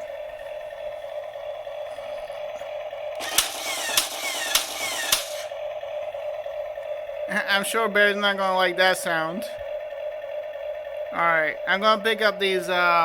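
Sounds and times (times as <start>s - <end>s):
toy car hum: 0.0s - 12.9s
toy cannon shots: 3.2s - 5.5s.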